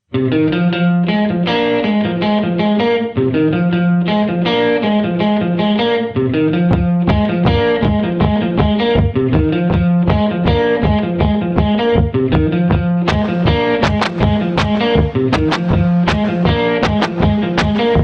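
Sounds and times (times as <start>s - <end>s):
overdriven electric guitar riff: 0.0s - 18.0s
bass pulse: 6.7s - 18.0s.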